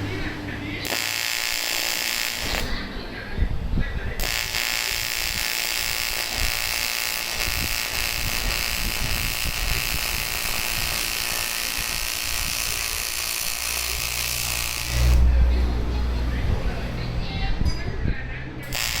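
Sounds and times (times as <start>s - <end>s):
welding arc buzzing hiss: 0.0s - 2.9s, 4.2s - 15.3s, 18.6s - 19.0s
low hum: 13.6s - 17.3s.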